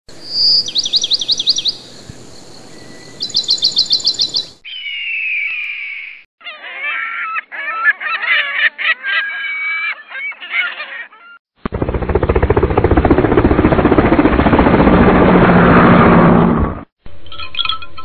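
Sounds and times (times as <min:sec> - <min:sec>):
harsh falling bird call: 0:00.1 - 0:11.4
bird's rapid high trill: 0:02.7 - 0:06.2.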